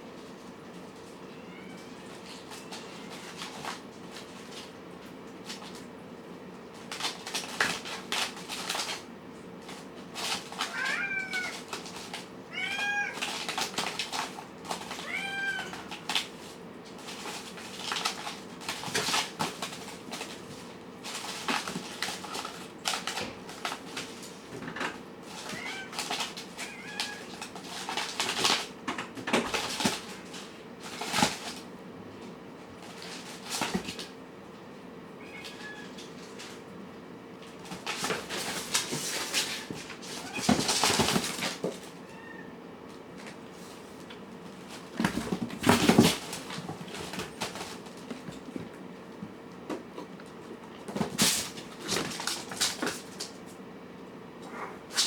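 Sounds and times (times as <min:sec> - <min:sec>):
kittens meowing: 0:01.3 - 0:03.4, 0:10.7 - 0:11.6, 0:12.5 - 0:13.3, 0:15.0 - 0:15.9, 0:35.2 - 0:36.0, 0:42.0 - 0:42.6.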